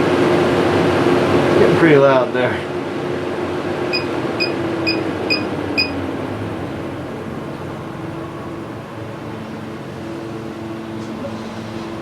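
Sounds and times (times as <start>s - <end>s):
vent fan whirring: 0.0s - 12.0s
short high beeps: 3.9s - 6.0s.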